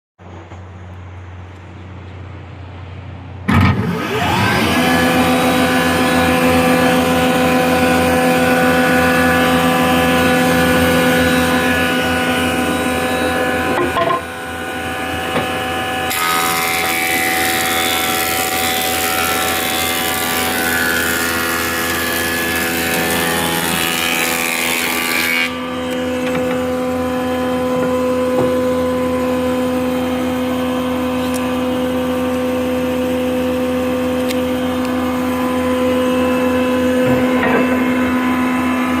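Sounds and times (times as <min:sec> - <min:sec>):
planer shaving wood: 0:03.5 - 0:39.0
electric planer humming: 0:03.6 - 0:39.0.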